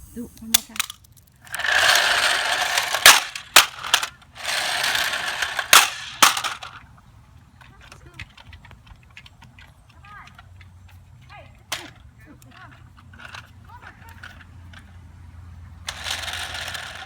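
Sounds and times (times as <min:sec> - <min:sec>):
toy blaster motor whirring: 0:00.0 - 0:06.8, 0:15.9 - 0:17.0.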